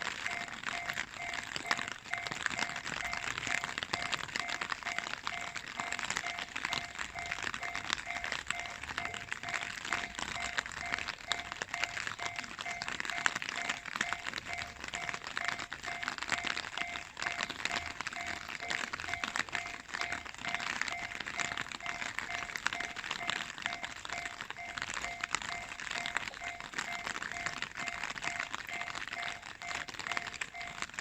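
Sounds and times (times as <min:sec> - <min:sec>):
rushing crackling noise: 0:00.0 - 0:31.0
level crossing two-tone bell: 0:00.3 - 0:30.9.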